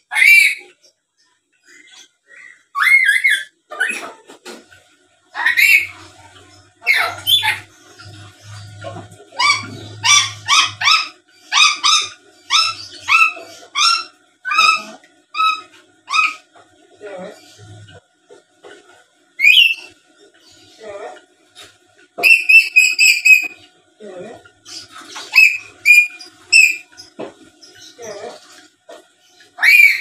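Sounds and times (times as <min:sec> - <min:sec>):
parrot calling harshly: 0:00.1 - 0:00.8, 0:02.4 - 0:04.2, 0:05.3 - 0:06.2, 0:06.8 - 0:08.7, 0:09.3 - 0:16.5, 0:19.4 - 0:19.9, 0:22.2 - 0:23.6, 0:24.7 - 0:27.1, 0:29.6 - 0:30.0.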